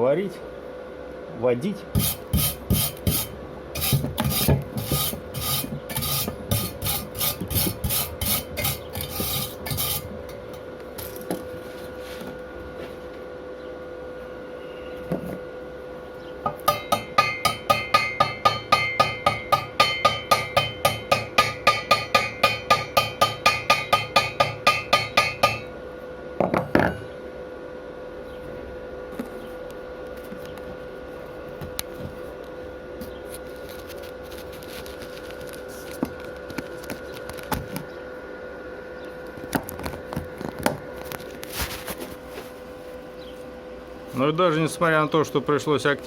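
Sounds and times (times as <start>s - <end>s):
metal scrape: 2.0s - 10.1s
hammer striking steel: 16.4s - 25.7s.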